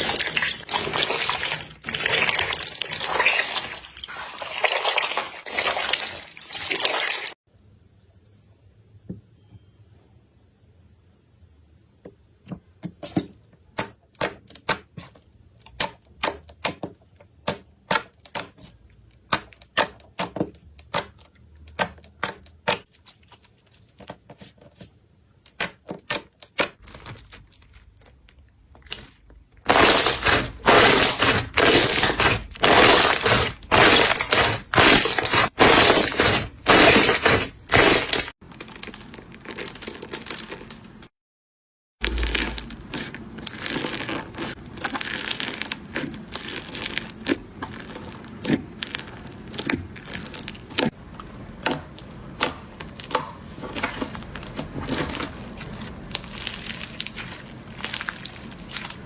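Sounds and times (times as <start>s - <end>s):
slime crackly squishes: 0.0s - 7.4s, 26.8s - 41.0s, 42.0s - 59.0s.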